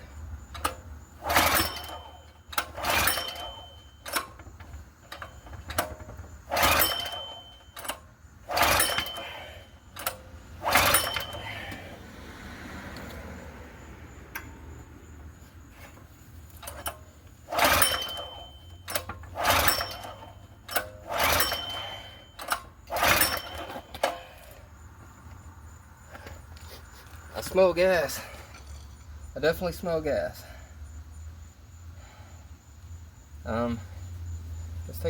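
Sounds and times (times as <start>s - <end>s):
engine recoil starter pulls: 0.4s - 13.5s, 14.3s - 24.7s, 26.1s - 30.6s
engine cranking: 0.4s - 30.6s.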